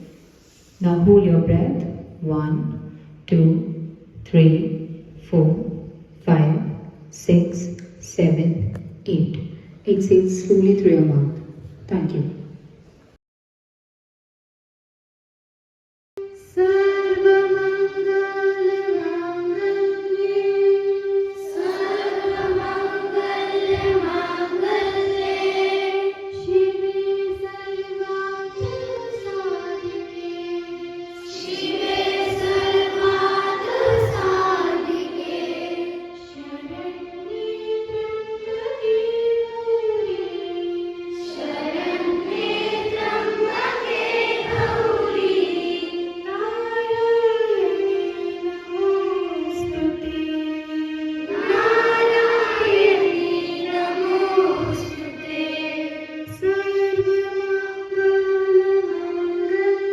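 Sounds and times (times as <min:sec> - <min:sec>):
group of voices singing: 0:21.4 - 0:28.0, 0:31.2 - 0:36.1, 0:41.1 - 0:46.8, 0:51.3 - 0:56.4.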